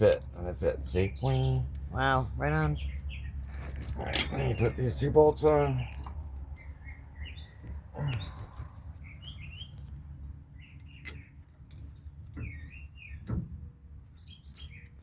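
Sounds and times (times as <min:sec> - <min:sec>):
small birds chirping: 0:00.0 - 0:15.0
metallic clicks and knocks: 0:10.8 - 0:13.7.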